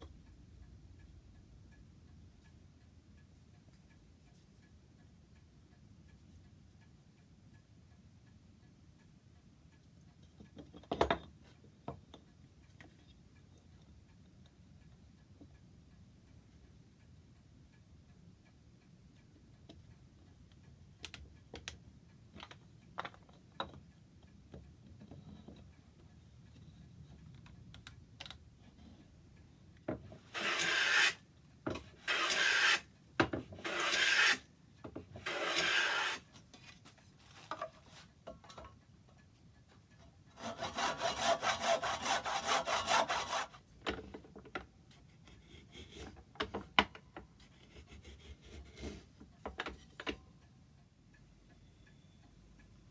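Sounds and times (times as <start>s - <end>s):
hand tool on wood: 30.0s - 34.4s, 35.0s - 38.1s, 40.4s - 43.6s.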